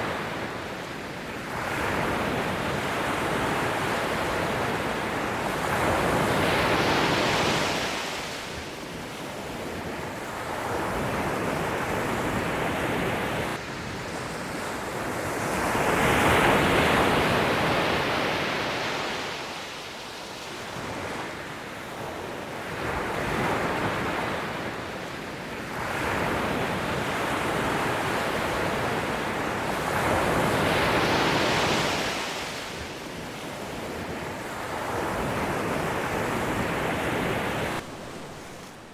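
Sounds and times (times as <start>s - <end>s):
ocean waves breaking on shore: 0.0s - 38.9s.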